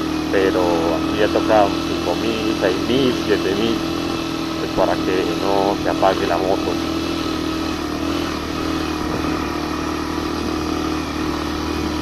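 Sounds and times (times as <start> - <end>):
motorcycle engine at high revs: 0.0 - 12.0.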